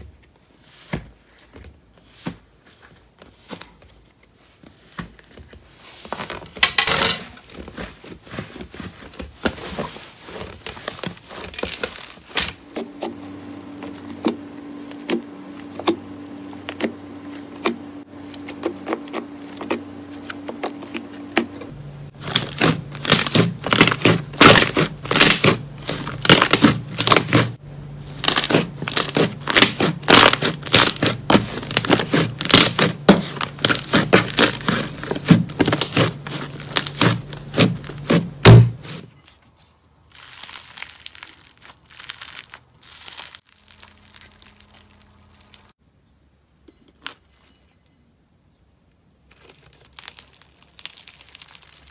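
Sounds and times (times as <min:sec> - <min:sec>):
faint steady hum: 0:10.4 - 0:39.1.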